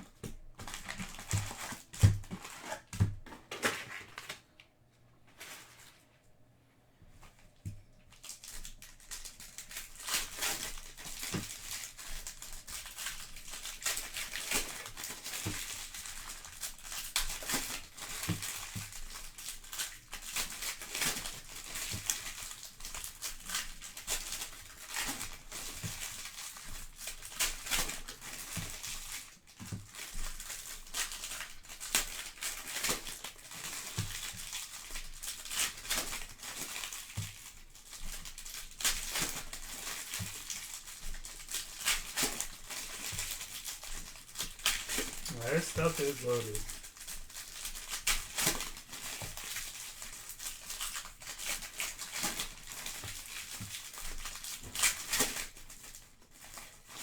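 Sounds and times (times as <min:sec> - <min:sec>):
foil wrappers tearing and crinkling: 0:00.6 - 0:04.5, 0:08.1 - 0:57.0.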